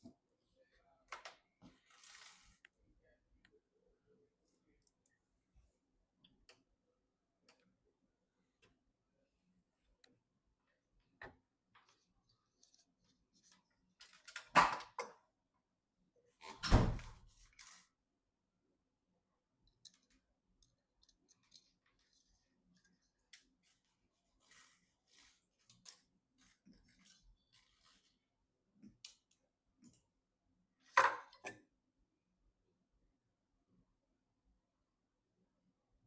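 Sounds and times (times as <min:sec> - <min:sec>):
clatter of computer parts: 0:13.4 - 0:15.2
small clicks and rustles: 0:19.6 - 0:28.2.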